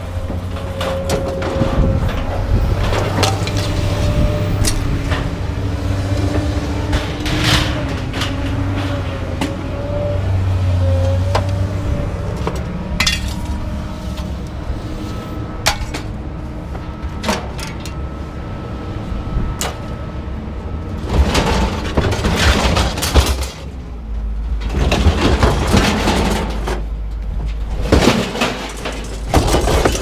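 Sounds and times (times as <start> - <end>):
scrap metal clanking: 0.3 - 9.7, 12.3 - 16.1, 21.1 - 23.8, 24.6 - 30.0
metal clattering: 12.4 - 13.6, 27.6 - 30.0.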